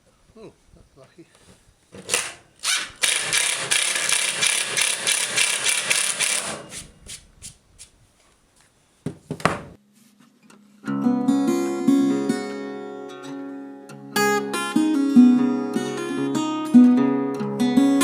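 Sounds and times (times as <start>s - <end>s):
scattered knocks and clicks: 3.0s - 6.6s
acoustic guitar music: 10.4s - 18.0s.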